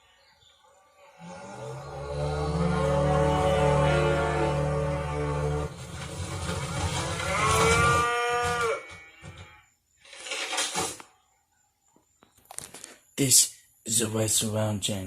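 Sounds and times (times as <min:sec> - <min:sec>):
toy cow moo: 0:01.2 - 0:05.7, 0:06.9 - 0:09.7
short noisy clatter: 0:05.7 - 0:09.4.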